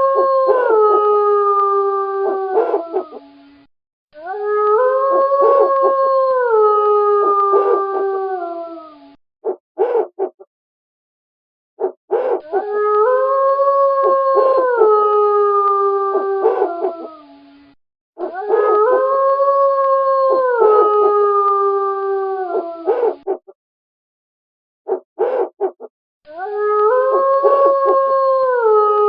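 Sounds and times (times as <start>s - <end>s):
wolves howling: 0.0s - 3.3s, 4.2s - 10.4s, 11.8s - 17.4s, 18.2s - 23.5s, 24.9s - 29.0s
wolf yips: 2.5s - 3.2s, 7.5s - 8.0s, 9.4s - 10.5s, 11.8s - 12.8s, 16.4s - 17.1s, 18.2s - 19.0s, 22.5s - 23.6s, 24.9s - 28.0s.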